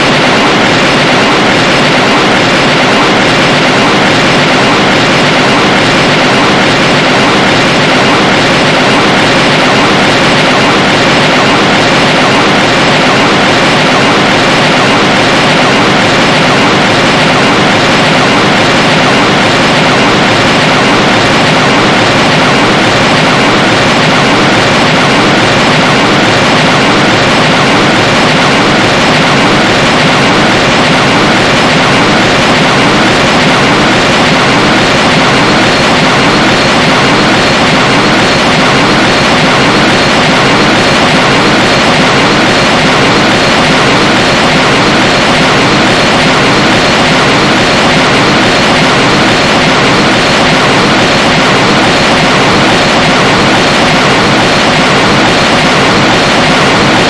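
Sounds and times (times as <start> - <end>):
loud rushing noise: 0.0 - 57.0.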